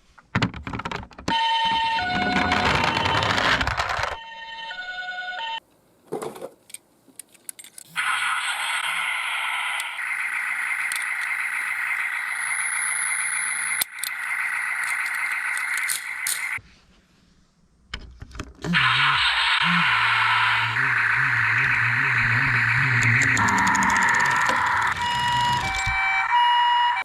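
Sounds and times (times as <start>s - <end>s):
two-tone ambulance siren: 1.3s - 3.6s, 4.2s - 5.6s, 8.0s - 16.6s, 18.7s - 27.0s
toy cars rattling down slope: 8.1s - 16.6s.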